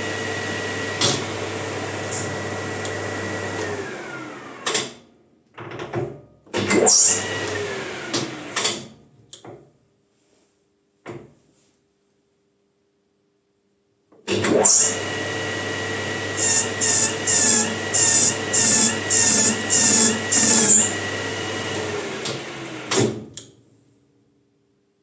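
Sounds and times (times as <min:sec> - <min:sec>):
lathe spinning whine: 0:14.7 - 0:23.0.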